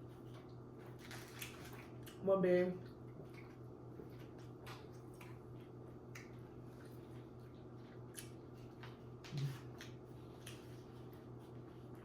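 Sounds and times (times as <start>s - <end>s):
steady low hum: 0.0s - 12.0s
low voiced hum: 8.9s - 12.0s.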